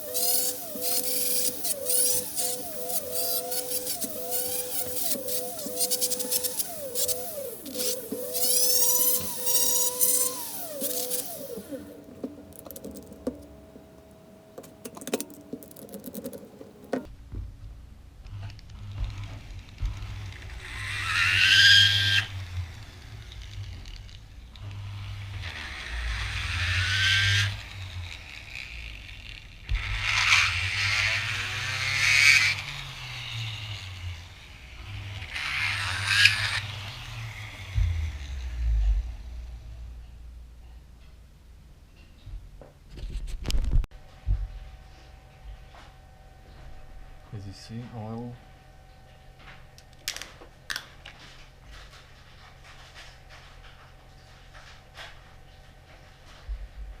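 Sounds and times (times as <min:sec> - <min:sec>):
flex shaft grinder whining: 0:00.0 - 0:17.1, 0:19.4 - 0:40.0
grinder bit scraping wood: 0:00.0 - 0:17.1.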